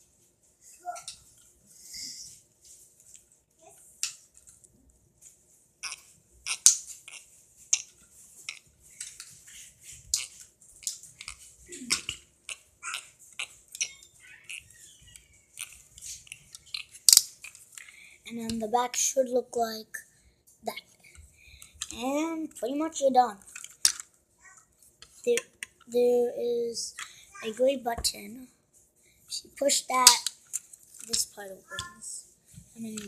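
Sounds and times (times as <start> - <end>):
plastic parts clicking and knocking: 5.8 - 9.5, 10.1 - 18.6, 21.0 - 22.1, 23.4 - 24.2, 24.9 - 25.9, 29.9 - 32.0.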